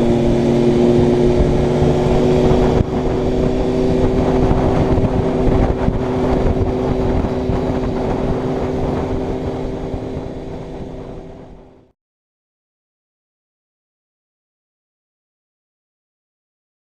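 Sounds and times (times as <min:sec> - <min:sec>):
motorcycle engine cruising: 0:00.0 - 0:11.9
wind rushing over microphone: 0:00.0 - 0:11.9.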